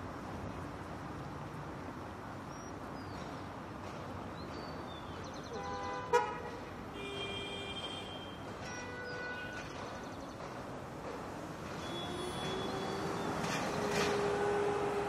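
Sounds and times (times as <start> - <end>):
passing vehicles: 0.0 - 15.0
vehicle horn: 5.6 - 9.6, 11.8 - 15.0.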